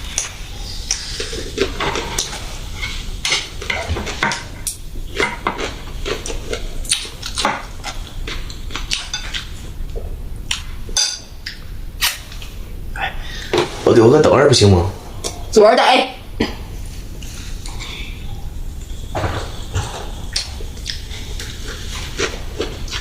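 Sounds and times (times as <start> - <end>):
dishes and utensils clinking: 1.2 - 9.6, 10.5 - 12.3.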